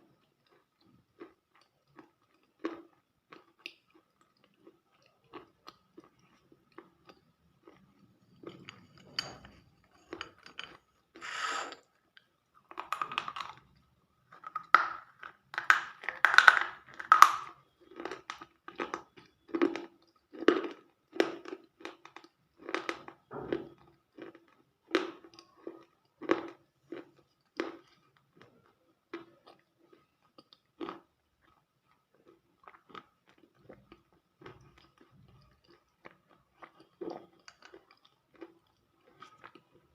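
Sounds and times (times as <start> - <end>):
crunchy chewing: 9.9 - 13.7.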